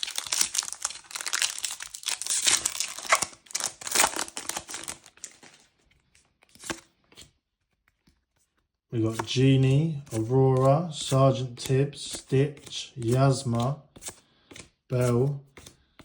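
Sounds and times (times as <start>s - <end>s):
foil wrapper crinkling and tearing: 0.0s - 5.8s.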